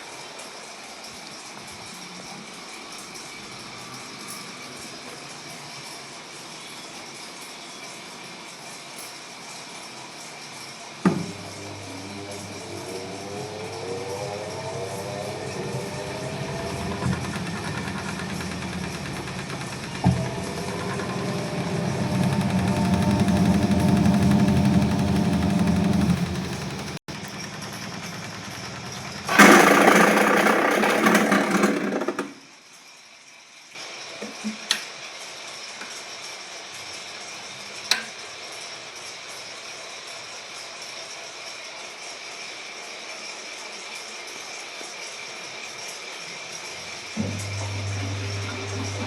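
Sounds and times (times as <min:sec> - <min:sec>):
motor whine rising in pitch: 0:11.1 - 0:32.1, 0:47.2 - 0:49.0
washing machine clunk: 0:11.1 - 0:32.3
washing machine motor hum: 0:11.1 - 0:32.3, 0:46.7 - 0:49.0.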